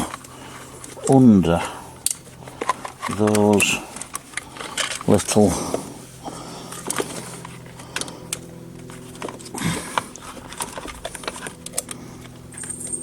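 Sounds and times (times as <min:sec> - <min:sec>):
low hum: 0:00.0 - 0:13.0
metal clicks and scrapes: 0:02.0 - 0:05.2.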